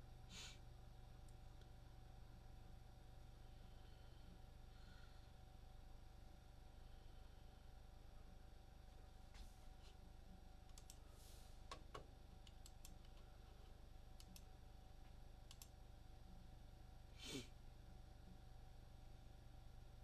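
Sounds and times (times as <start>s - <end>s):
computer mouse and keyboard clicks: 10.7s - 11.0s, 11.7s - 13.3s, 14.2s - 14.5s, 15.5s - 15.8s.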